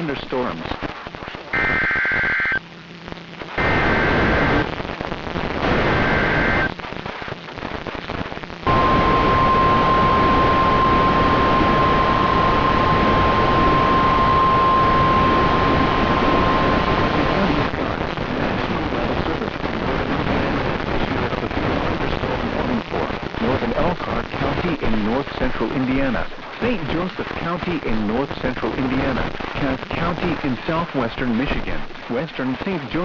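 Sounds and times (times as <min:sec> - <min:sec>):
radio static: 0:00.0 - 0:33.0
data tone bursts: 0:01.5 - 0:02.6, 0:08.7 - 0:17.1
steady warning alarm tone: 0:08.7 - 0:16.7.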